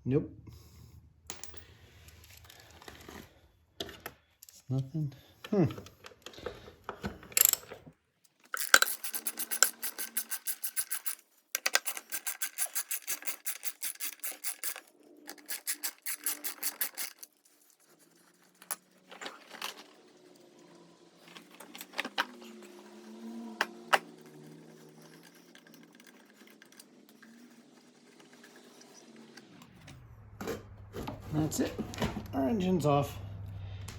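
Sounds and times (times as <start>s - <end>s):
socket ratchet clicking: 8.5s - 17.3s.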